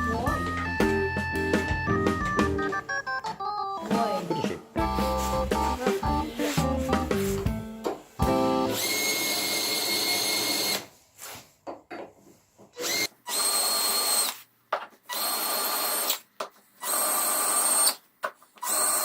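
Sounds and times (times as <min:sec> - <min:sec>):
electric drill running in bursts: 0:08.7 - 0:10.9, 0:12.8 - 0:14.4, 0:15.1 - 0:16.2, 0:16.8 - 0:18.0, 0:18.6 - 0:19.0.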